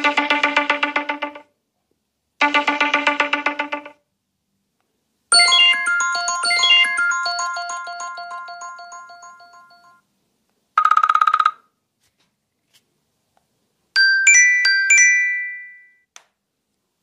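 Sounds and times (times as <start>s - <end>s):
bright bell-like chime notes: 5.3s - 10.0s.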